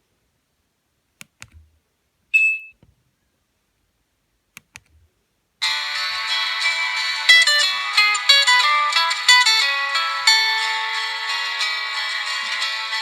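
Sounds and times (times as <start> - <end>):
phone keypad clicks: 1.2 - 1.7, 4.6 - 5.0
short high beep: 2.4 - 2.8.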